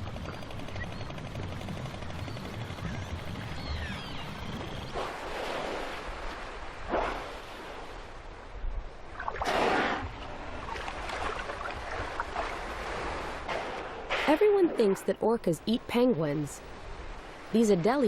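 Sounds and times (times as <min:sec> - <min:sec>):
orcas exhaling breathy blows: 0:09.4 - 0:10.2.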